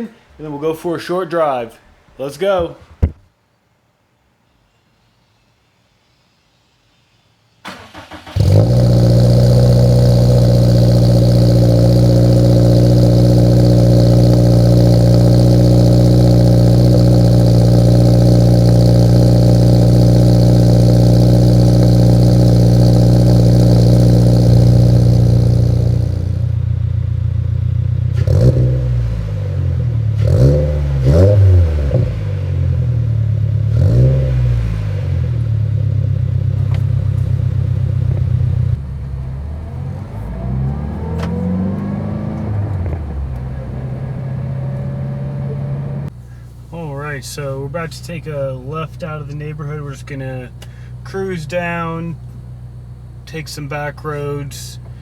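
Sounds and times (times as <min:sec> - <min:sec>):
car engine starting and idling: 0:07.6 - 0:55.0
engine revving: 0:07.7 - 0:46.2.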